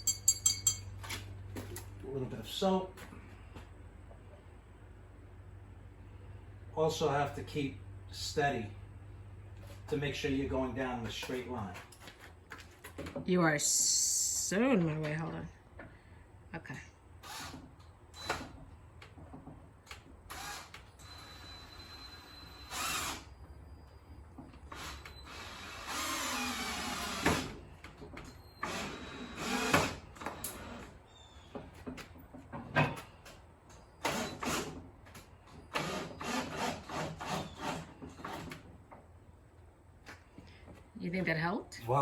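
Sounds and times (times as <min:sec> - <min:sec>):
power drill driving screw into wood: 0:17.2 - 0:18.6, 0:20.3 - 0:23.3, 0:24.7 - 0:27.6, 0:28.6 - 0:31.0, 0:34.0 - 0:34.8, 0:35.7 - 0:38.6.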